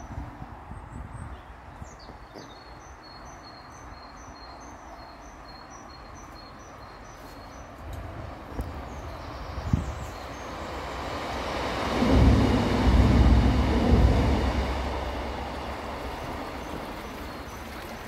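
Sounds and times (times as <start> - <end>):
train rumbling over bridge: 5.2 - 18.0.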